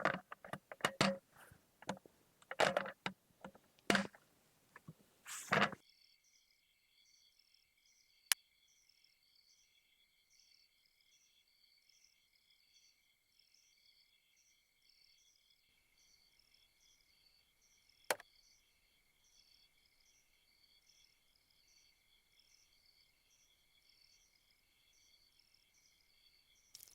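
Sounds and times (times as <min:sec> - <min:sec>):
crickets chirping: 0:05.8 - 0:26.9.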